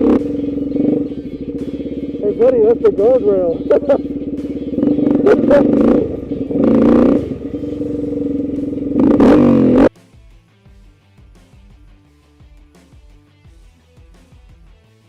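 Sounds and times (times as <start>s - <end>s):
vehicle engine revving: 0.0s - 9.9s.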